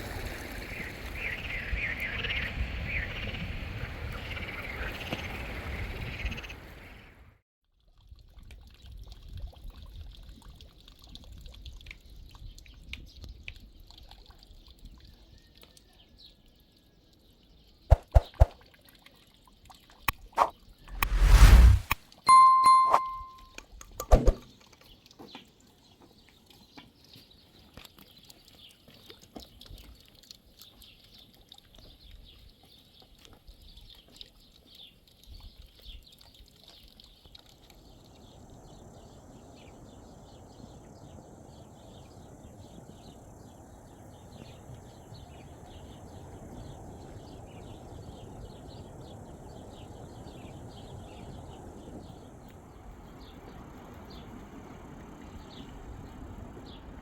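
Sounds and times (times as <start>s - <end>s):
birds chirping: 0.7s - 7.1s
steady low rushing noise: 20.9s - 22.0s.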